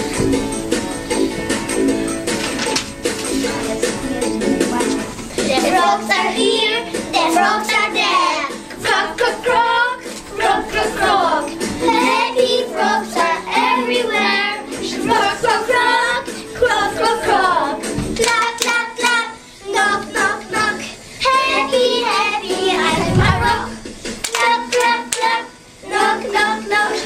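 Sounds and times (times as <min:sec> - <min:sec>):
backing track music: 0:00.0 - 0:27.0
children singing: 0:05.4 - 0:27.0
hand claps: 0:18.1 - 0:18.9, 0:24.2 - 0:25.3.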